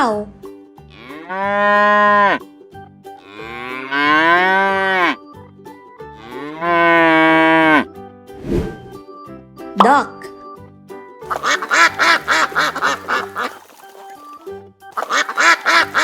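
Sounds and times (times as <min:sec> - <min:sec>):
cow mooing: 0:03.3 - 0:05.1.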